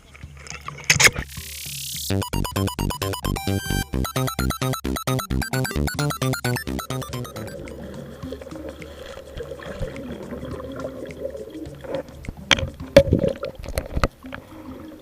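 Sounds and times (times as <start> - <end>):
water splashes: 7.5 - 15.0
stream water sloshing and gurgling: 7.7 - 15.0.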